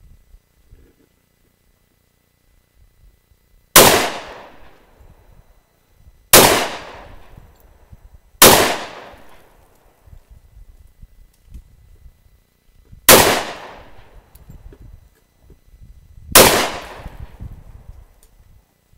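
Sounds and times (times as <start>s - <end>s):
pistol shots: 3.8s - 4.8s, 6.3s - 7.3s, 8.4s - 9.5s, 13.1s - 14.1s, 16.3s - 17.4s.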